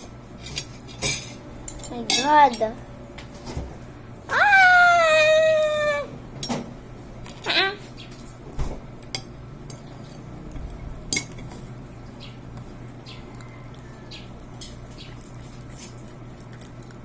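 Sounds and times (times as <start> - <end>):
cutlery and dishes clinking: 0.0 - 2.6, 11.1 - 11.6
steady low hum: 0.0 - 17.0.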